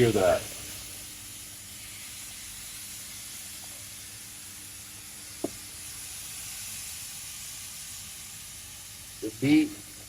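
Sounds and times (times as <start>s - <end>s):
chicken sizzling in grill pan: 0.0s - 10.0s.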